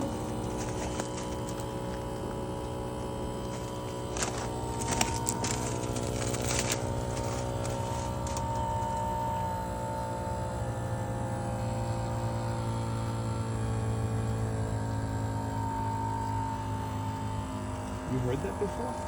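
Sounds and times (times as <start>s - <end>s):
clicks and crackles: 0.0s - 2.0s, 3.4s - 8.9s
air conditioner humming and whining: 0.0s - 19.0s.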